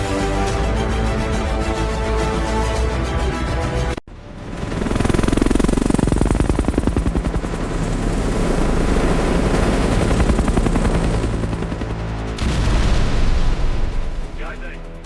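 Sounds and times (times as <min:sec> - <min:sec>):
low engine drone: 0:00.0 - 0:12.4
helicopter rotors chopping: 0:00.0 - 0:12.6, 0:13.9 - 0:15.0.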